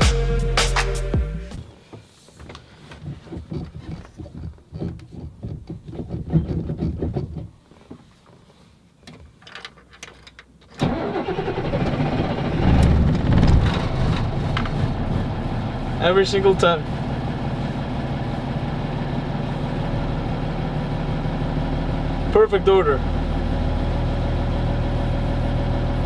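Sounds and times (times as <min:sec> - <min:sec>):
diesel engine starting and running: 0:10.8 - 0:26.0.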